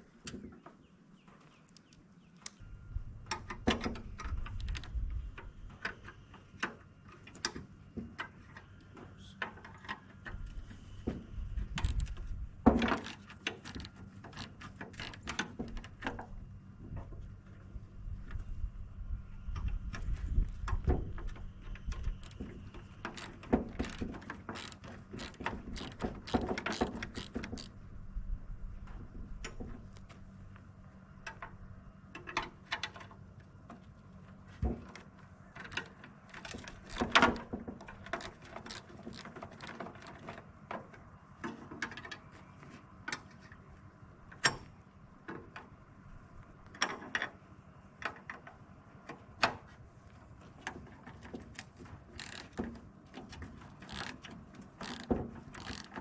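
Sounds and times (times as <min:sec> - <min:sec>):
steady low hum: 0:01.9 - 0:41.4.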